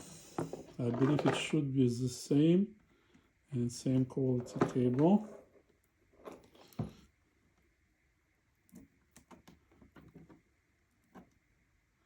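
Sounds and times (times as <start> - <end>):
small clicks and rustles: 8.6 - 11.5.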